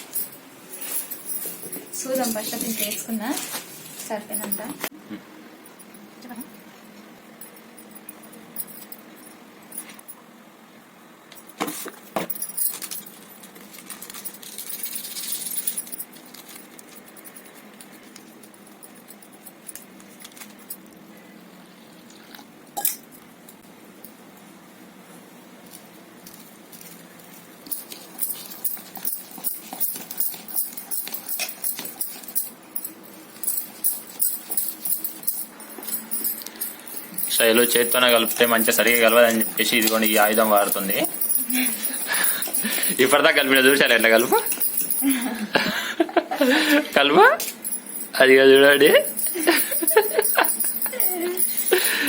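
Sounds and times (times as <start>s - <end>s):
kitchen utensils clinking: 0.0s - 4.9s, 27.7s - 45.7s.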